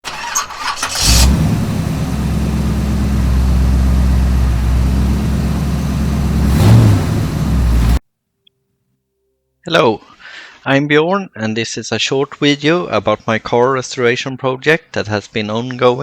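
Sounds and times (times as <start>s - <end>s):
vee-eight engine starting and idling: 0.0s - 8.0s.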